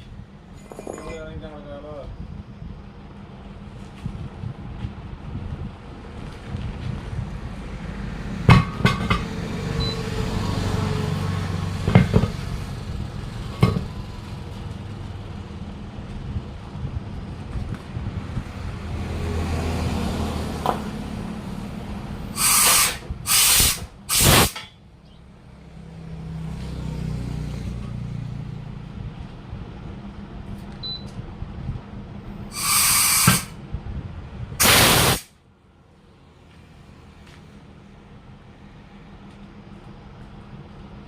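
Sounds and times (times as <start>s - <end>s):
low engine hum: 0.0s - 24.1s, 24.8s - 32.6s, 33.5s - 34.6s, 35.3s - 41.0s
compressed air hissing: 22.3s - 24.6s, 32.5s - 33.6s, 34.6s - 35.3s.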